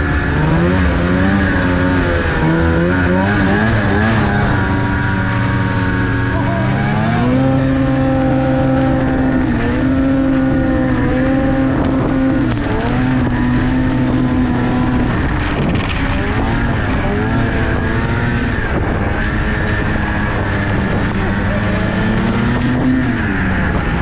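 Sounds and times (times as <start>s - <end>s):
snowmobile engine running: 0.0s - 24.0s.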